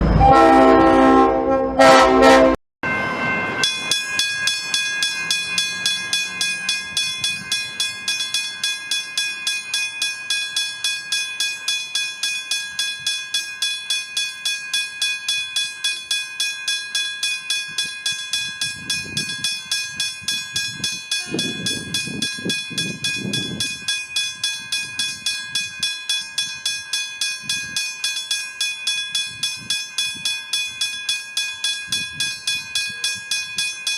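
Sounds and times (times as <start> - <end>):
loud horn-like tone: 0.0 - 2.6
level crossing bell ringing: 2.8 - 33.9.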